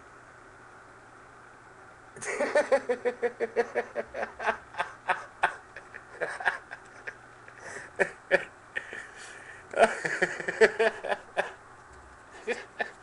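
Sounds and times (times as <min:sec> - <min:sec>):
man laughing: 0:02.2 - 0:11.6, 0:12.4 - 0:13.0.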